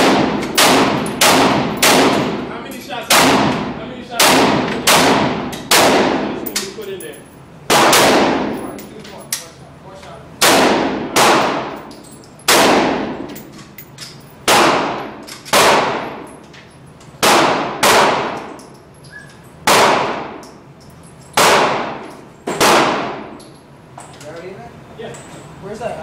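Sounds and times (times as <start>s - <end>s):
gunshots with ringing decay: 0.0s - 2.5s, 3.1s - 6.4s, 7.7s - 8.6s, 10.4s - 11.9s, 12.5s - 13.3s, 14.4s - 16.3s, 17.2s - 18.6s, 19.6s - 20.4s, 21.4s - 23.4s.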